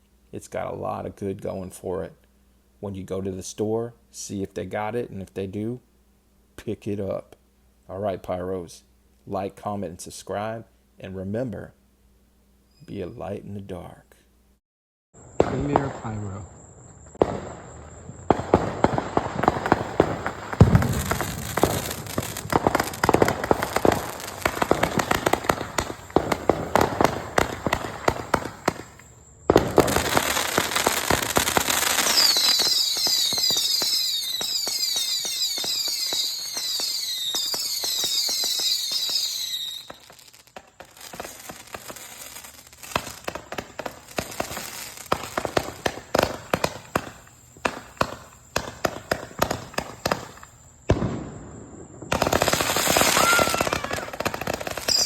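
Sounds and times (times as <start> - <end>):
firework cake shots: 15.3 - 16.4, 18.2 - 51.3, 52.1 - 55.0
firework pops and crackle: 15.3 - 55.0.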